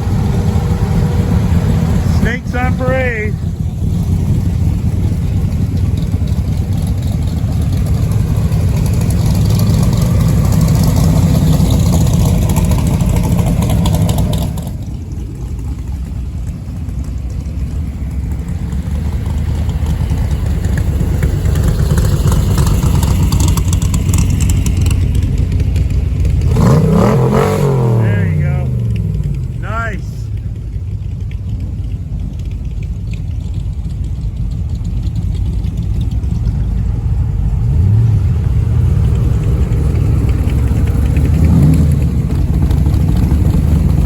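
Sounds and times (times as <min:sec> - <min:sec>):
car engine revving: 0:00.0 - 0:44.0
car engines rumbling: 0:00.0 - 0:44.0.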